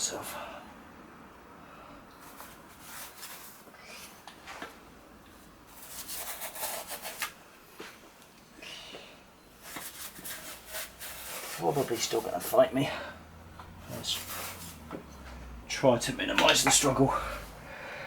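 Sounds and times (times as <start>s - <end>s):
scratchy rubbing strokes: 2.2s - 4.2s, 5.7s - 7.3s, 9.6s - 12.6s, 13.9s - 14.9s.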